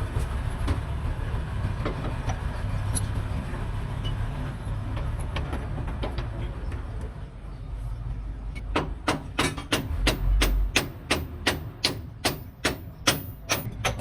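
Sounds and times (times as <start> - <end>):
hammer blows on metal: 9.1 - 14.0
low steady rumble: 9.7 - 13.7.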